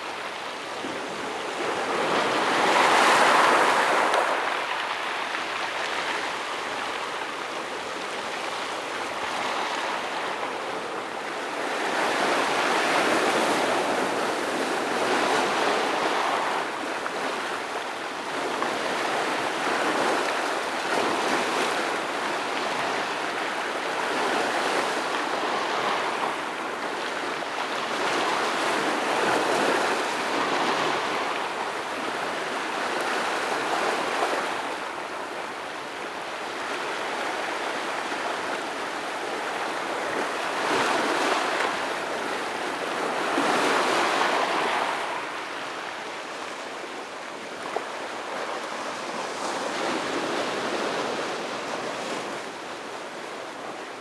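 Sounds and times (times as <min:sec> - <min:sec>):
ocean waves breaking on rocks: 0:01.1 - 0:06.7.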